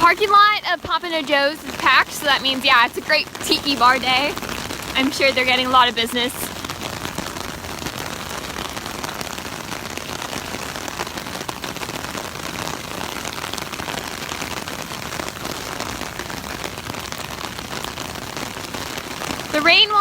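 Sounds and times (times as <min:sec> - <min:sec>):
rain on an umbrella: 0:00.0 - 0:20.0.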